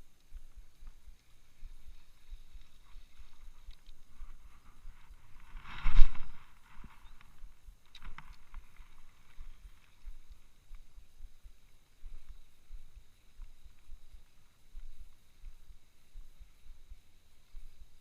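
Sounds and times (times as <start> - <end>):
faint clicks: 0.0 - 4.4.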